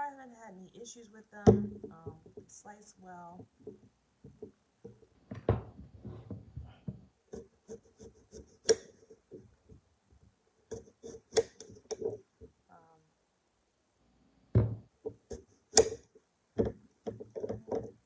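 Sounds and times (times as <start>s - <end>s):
knife cutting on board: 7.3s - 9.2s, 10.7s - 12.2s.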